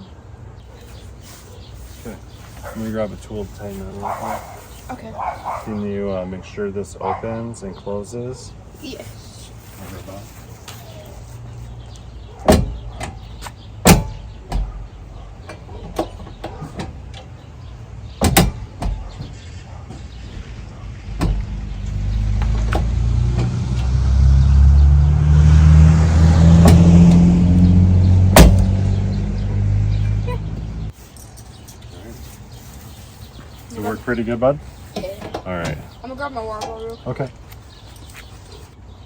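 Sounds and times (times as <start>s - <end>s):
car door knocking closed: 12.5s - 13.2s, 13.8s - 14.8s, 18.2s - 19.4s, 21.1s - 21.6s, 28.3s - 28.8s
vehicle engine running: 20.2s - 31.0s.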